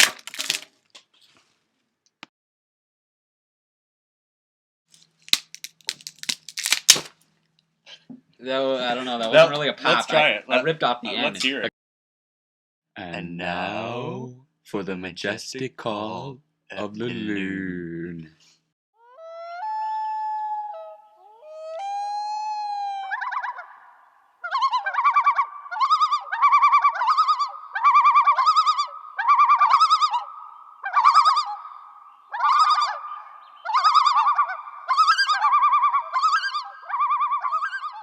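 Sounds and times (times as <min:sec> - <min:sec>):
loon wailing: 0:19.0 - 0:38.0
loon tremolo calls: 0:19.1 - 0:38.0.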